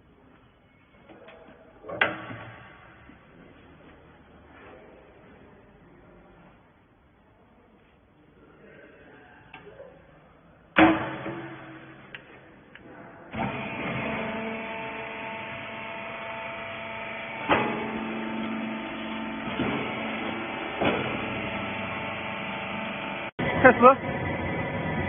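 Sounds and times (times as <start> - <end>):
hydraulic baler humming: 10.8 - 25.0.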